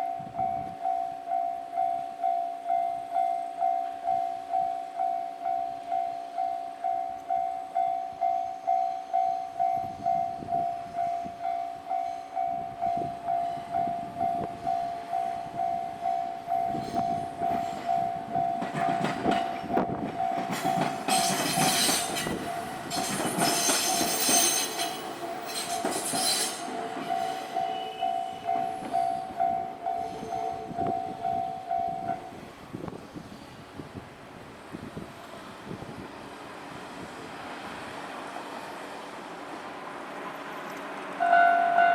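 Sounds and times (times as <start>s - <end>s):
train rumble and wheel clatter: 0.0s - 41.9s
level crossing bell clanging: 41.2s - 41.9s.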